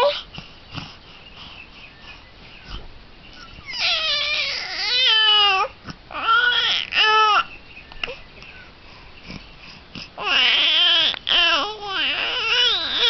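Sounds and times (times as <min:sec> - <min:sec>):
baby crying: 0:03.6 - 0:07.5, 0:10.2 - 0:13.0.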